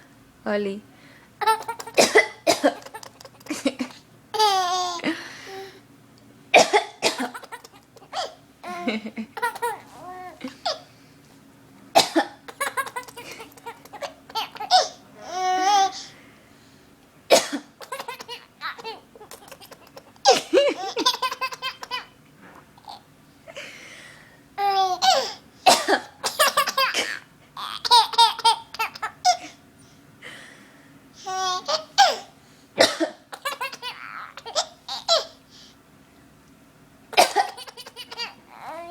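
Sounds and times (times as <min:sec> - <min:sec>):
baby laughing: 0:01.4 - 0:05.1, 0:07.2 - 0:10.9, 0:12.5 - 0:16.0, 0:17.8 - 0:22.2, 0:24.6 - 0:25.4, 0:26.4 - 0:29.6, 0:31.2 - 0:32.3, 0:33.3 - 0:35.4, 0:37.2 - 0:38.9
woman coughing: 0:02.0 - 0:02.8, 0:06.6 - 0:08.3, 0:12.0 - 0:12.4, 0:17.3 - 0:18.4, 0:20.2 - 0:20.8, 0:25.7 - 0:27.2, 0:32.8 - 0:33.3, 0:37.2 - 0:38.3.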